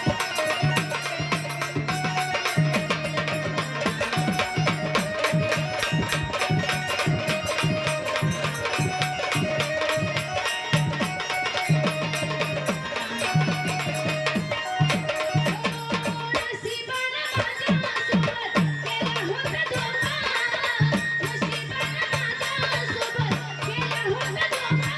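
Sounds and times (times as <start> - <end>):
fast hand drum rhythm: 0.0 - 16.5.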